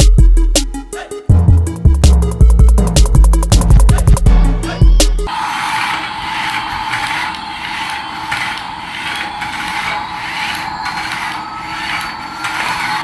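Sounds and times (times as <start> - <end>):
remote-control toy whirring: 4.8 - 13.0.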